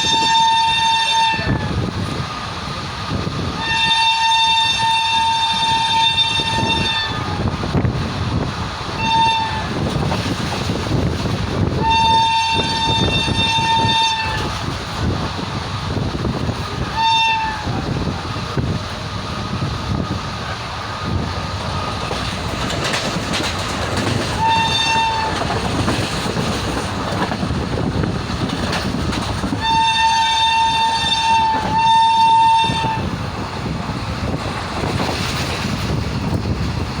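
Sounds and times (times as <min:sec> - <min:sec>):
shrill locomotive horn: 0:00.0 - 0:02.0, 0:03.5 - 0:07.6, 0:09.0 - 0:09.9, 0:11.6 - 0:14.6, 0:16.8 - 0:18.0, 0:24.3 - 0:25.8, 0:29.5 - 0:33.4
train rumble and clickety-clack: 0:00.0 - 0:37.0.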